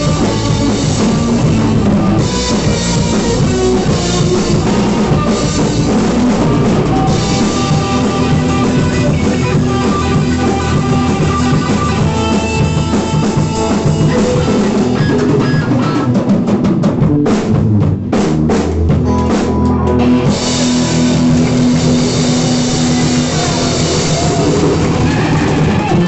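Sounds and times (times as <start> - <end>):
bass guitar: 0.0 - 26.0
drum kit: 0.0 - 26.0
electric guitar: 0.0 - 26.0.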